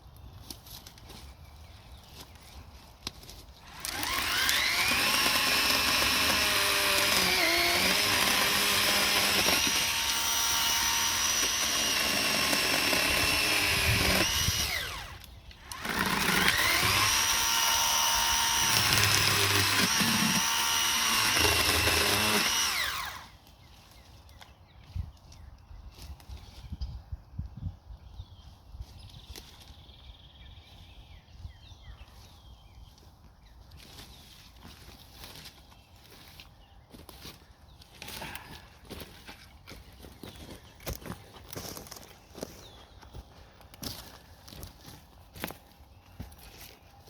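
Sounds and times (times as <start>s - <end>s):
electric chainsaw cutting wood: 3.6s - 23.4s.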